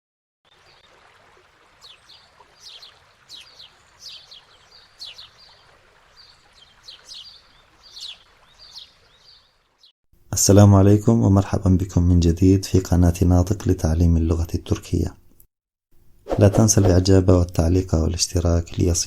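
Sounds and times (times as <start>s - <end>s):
birds chirping: 0.5s - 9.9s.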